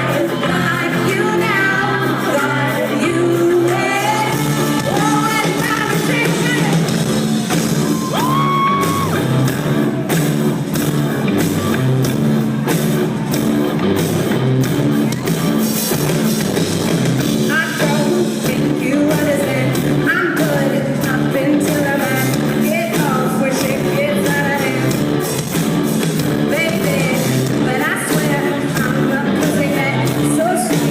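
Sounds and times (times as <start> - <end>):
woman singing: 0.0 - 6.9, 17.4 - 25.0, 26.5 - 30.9
live rock band: 0.0 - 30.9.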